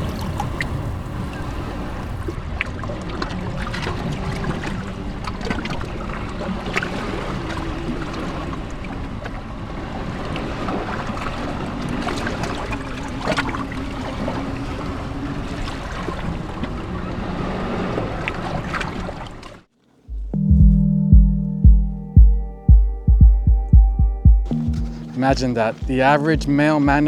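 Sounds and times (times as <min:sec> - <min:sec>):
faint low drone: 0:20.1 - 0:27.0
music with steady beat: 0:20.1 - 0:27.0.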